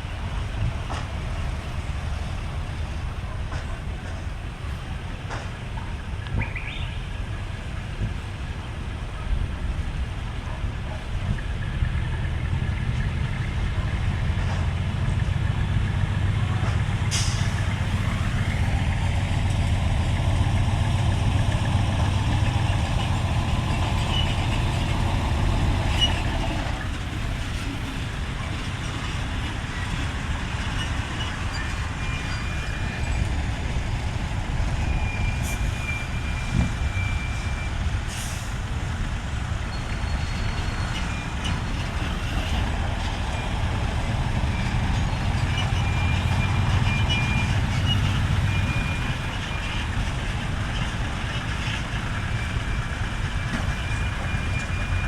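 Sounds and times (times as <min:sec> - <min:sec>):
diesel truck engine running: 0:11.2 - 0:55.0
air brake hisses: 0:17.1 - 0:17.8, 0:38.1 - 0:38.7.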